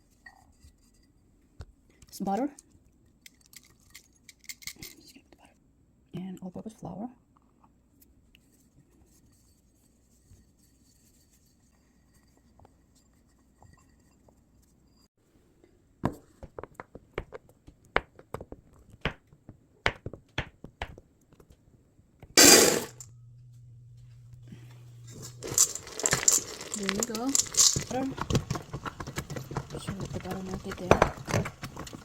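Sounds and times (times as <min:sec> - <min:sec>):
steady low hum: 0:22.4 - 0:28.9.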